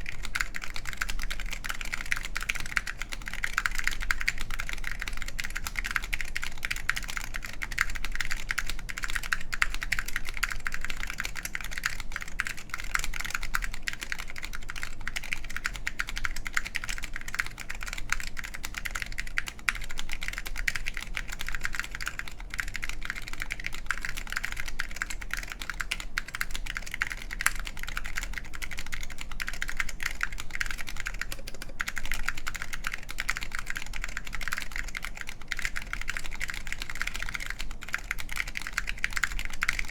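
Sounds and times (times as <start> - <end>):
fast typing on mechanical keyboard: 0.0 - 39.9.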